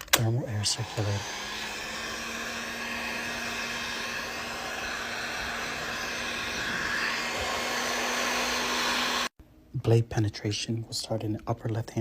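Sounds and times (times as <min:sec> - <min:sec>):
hot-air blower rushing air: 0:00.3 - 0:09.4.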